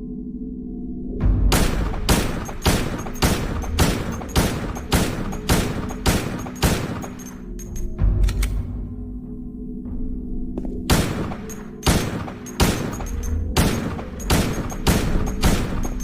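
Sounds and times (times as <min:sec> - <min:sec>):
pistol shots: 0:01.5 - 0:07.5, 0:10.9 - 0:16.0.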